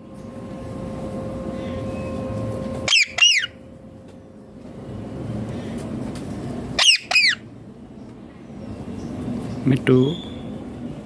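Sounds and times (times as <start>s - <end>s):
parakeet screeching: 2.9s - 3.6s, 6.8s - 7.5s.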